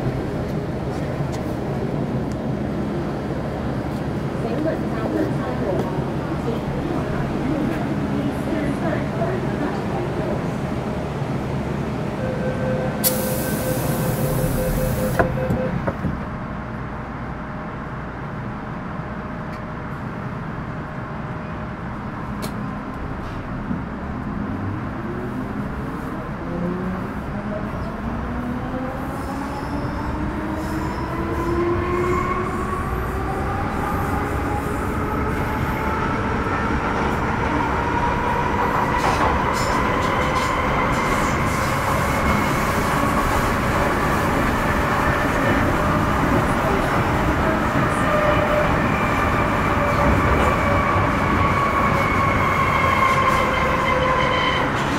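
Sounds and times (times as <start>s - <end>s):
air hiss: 13.0s - 15.2s.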